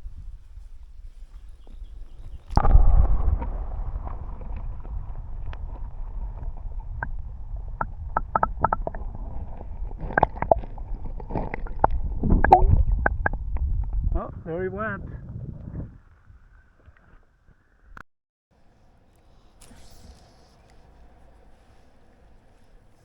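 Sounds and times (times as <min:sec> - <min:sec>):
wind and current rumble: 0:00.0 - 0:18.0
water splashing and gurgling: 0:05.8 - 0:13.8.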